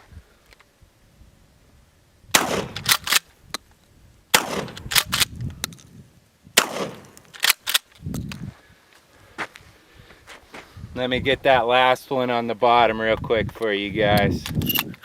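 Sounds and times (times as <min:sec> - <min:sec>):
shotgun shots: 0:02.3 - 0:03.2, 0:04.3 - 0:05.2, 0:06.6 - 0:07.8.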